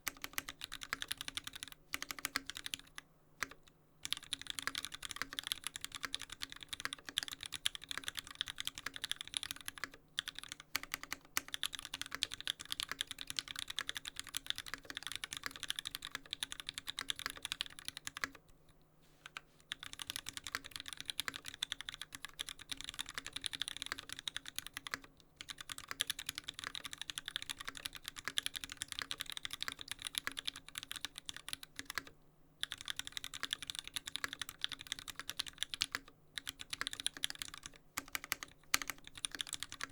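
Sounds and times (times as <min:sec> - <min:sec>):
mechanical keyboard typing: 0:00.0 - 0:18.4, 0:19.3 - 0:39.9.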